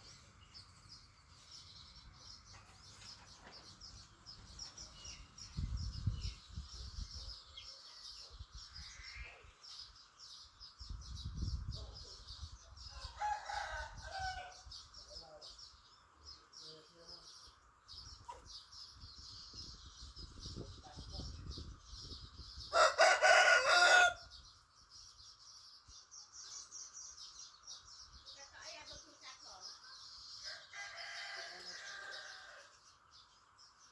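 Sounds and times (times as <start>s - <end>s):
rooster crowing: 13.0s - 14.6s, 22.7s - 24.3s, 30.5s - 32.7s.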